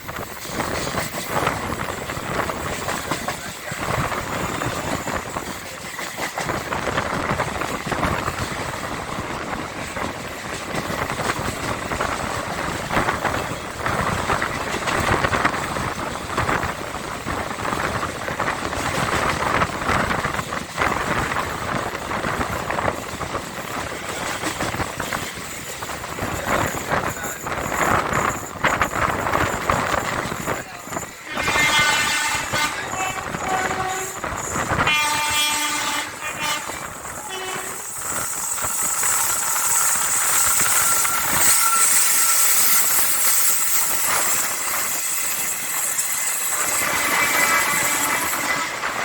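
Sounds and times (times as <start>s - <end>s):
train wheels clattering on rails: 0.0s - 49.0s.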